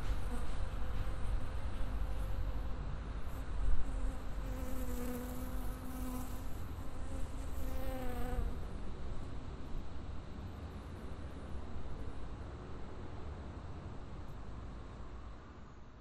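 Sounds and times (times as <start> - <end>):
flying insect buzzing: 3.9 - 8.6.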